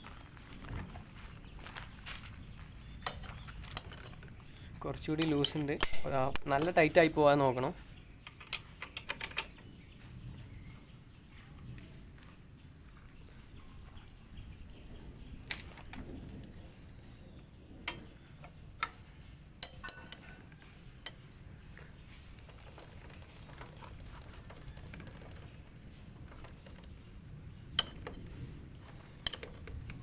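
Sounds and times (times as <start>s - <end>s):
spanners clinking on bolts: 3.0s - 4.2s, 5.2s - 7.2s, 19.6s - 20.4s.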